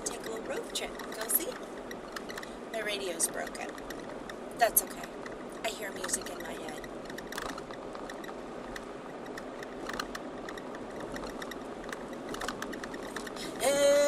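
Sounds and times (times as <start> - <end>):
faint clicks: 0.0 - 13.6
car road and engine noise: 0.0 - 14.0
woman singing loudly: 13.5 - 14.0.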